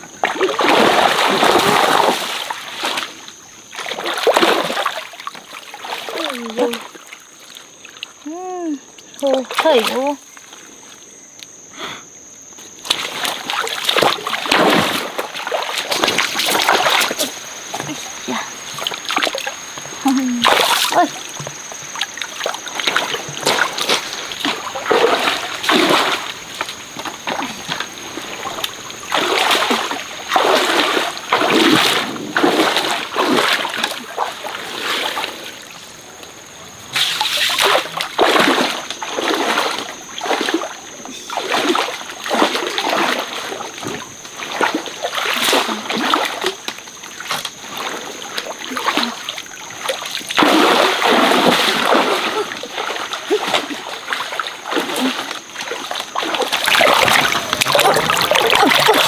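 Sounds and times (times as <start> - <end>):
water splashing: 0.0 - 8.2, 9.2 - 10.8, 12.8 - 59.0.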